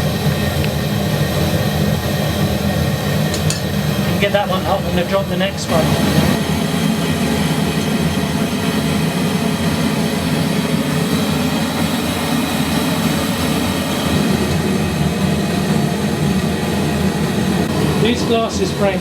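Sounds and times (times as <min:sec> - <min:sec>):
forge roaring: 0:00.0 - 0:19.0.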